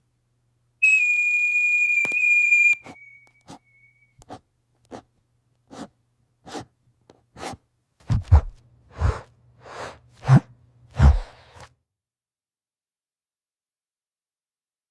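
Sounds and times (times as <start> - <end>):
high-pitched whistle tone: 0.8 - 4.2.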